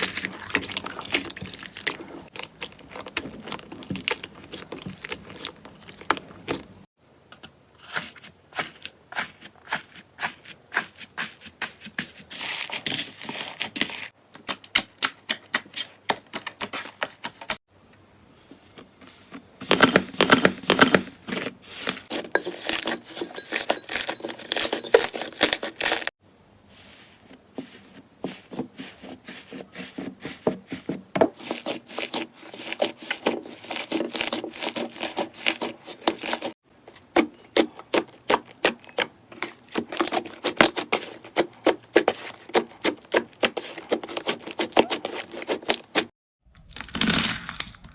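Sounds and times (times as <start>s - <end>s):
slime crackling and popping: 0.0s - 6.7s.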